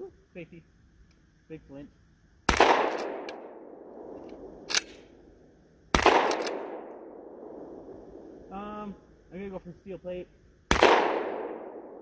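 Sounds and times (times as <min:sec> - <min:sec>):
shotgun shots echoing: 0:02.5 - 0:05.2, 0:05.9 - 0:07.9, 0:10.7 - 0:12.0
sharp click: 0:04.2 - 0:05.0, 0:06.2 - 0:06.6.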